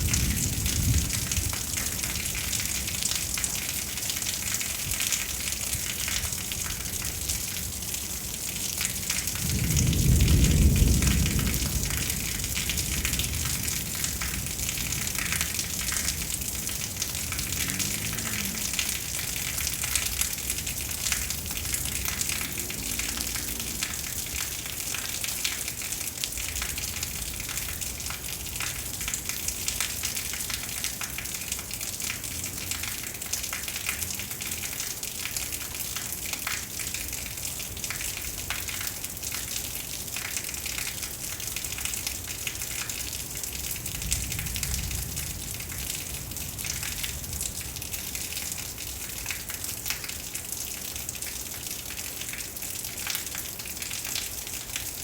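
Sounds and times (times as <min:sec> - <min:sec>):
thunder rumbling: 0:00.0 - 0:03.0, 0:08.9 - 0:25.8
heavy rain hissing: 0:07.7 - 0:27.2.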